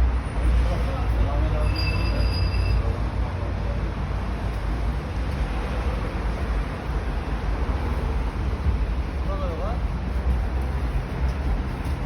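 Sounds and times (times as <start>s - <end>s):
outdoor rumble and hiss: 0.0s - 12.0s.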